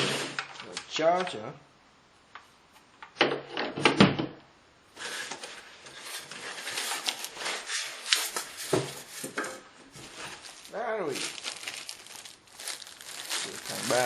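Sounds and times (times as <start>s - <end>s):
packaging rustling and crinkling: 5.0s - 14.0s.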